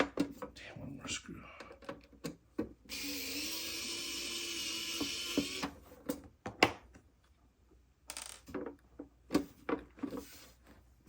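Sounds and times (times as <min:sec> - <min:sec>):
electric screwdriver running: 0:02.9 - 0:05.7.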